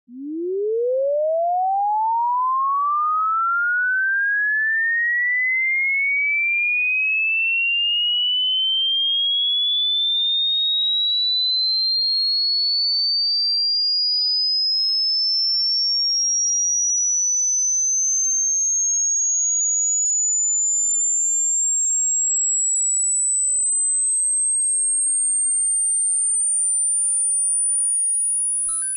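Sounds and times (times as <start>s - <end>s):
rising sine test tone: 0.1s - 28.9s.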